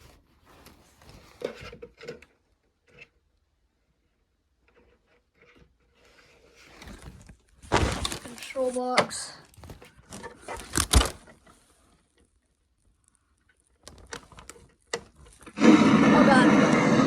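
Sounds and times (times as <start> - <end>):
faint rustling: 4.8 - 15.6.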